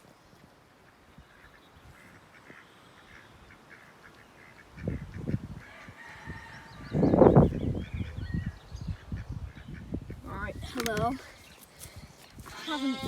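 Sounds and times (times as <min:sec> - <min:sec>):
ducks quacking: 0:00.8 - 0:05.9.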